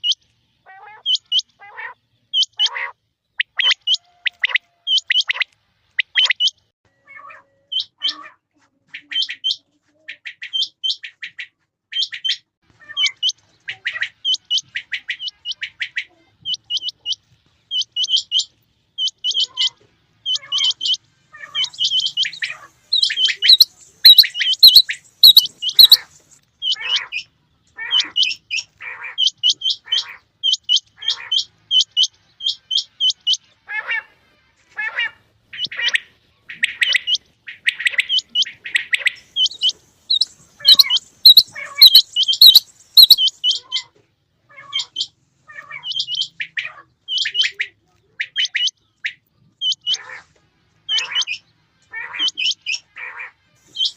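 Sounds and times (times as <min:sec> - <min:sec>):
quail calling: 0:00.0 - 0:43.9, 0:44.5 - 0:50.3, 0:50.9 - 0:53.9.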